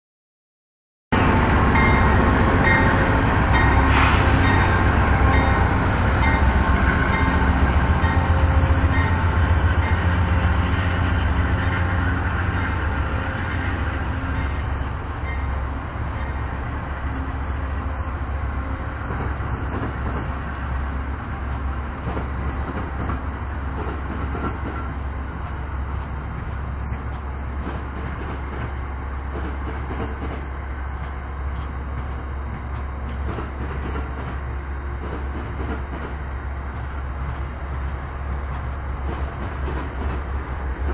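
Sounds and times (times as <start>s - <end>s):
diesel locomotive rumbling: 1.1s - 40.9s
burst of hiss: 3.8s - 4.6s.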